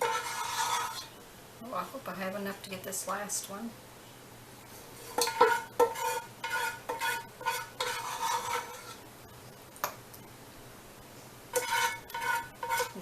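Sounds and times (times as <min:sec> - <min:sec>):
metal utensil scraping a saucepan: 0:00.0 - 0:01.2, 0:05.0 - 0:09.0, 0:11.5 - 0:13.0.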